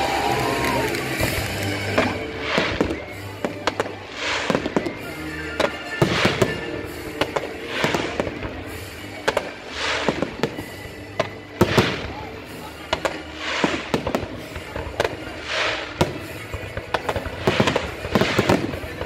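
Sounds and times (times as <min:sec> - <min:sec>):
fireworks bangs and crackles: 0:00.0 - 0:19.0
music playing: 0:00.0 - 0:19.0.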